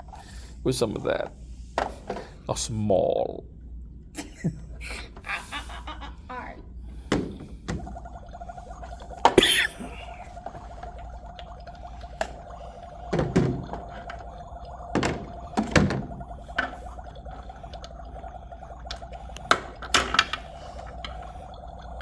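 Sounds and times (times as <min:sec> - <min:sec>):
faint hum: 0:00.0 - 0:22.0
objects thunking and knocking: 0:07.1 - 0:08.0, 0:13.1 - 0:14.3, 0:14.9 - 0:16.8.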